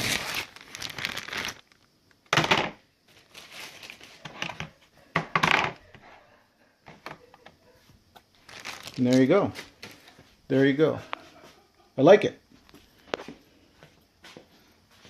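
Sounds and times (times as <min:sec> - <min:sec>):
packaging crinkling and rustling: 0:00.0 - 0:01.9, 0:03.1 - 0:04.6, 0:08.3 - 0:10.1.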